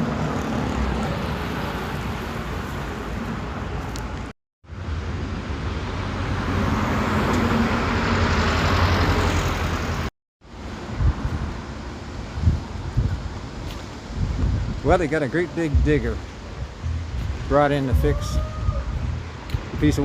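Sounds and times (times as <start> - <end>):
road traffic: 0.0 - 20.0
vehicle passing: 4.7 - 10.1.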